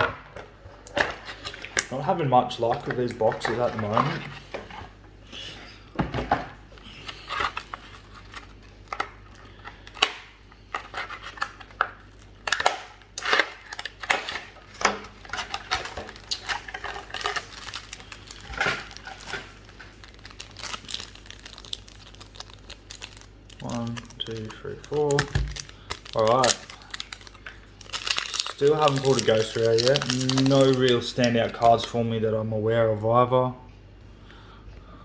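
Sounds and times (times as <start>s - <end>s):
packaging crinkling and tearing: 6.7s - 31.9s.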